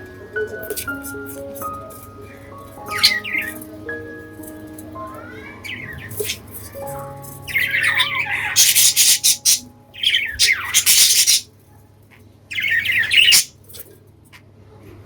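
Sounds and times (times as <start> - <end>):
budgies squawking and chirping: 2.2 - 3.7, 5.3 - 11.5, 12.5 - 13.5.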